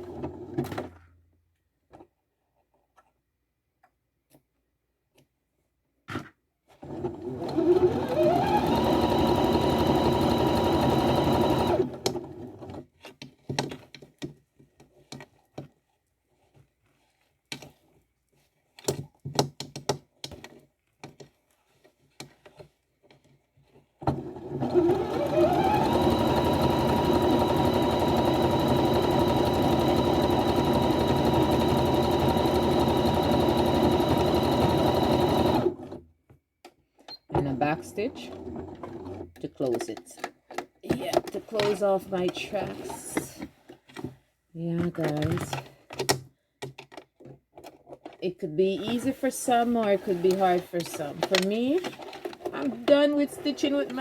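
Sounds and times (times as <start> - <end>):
sewing machine whining: 6.9 - 12.8, 24.1 - 36.0.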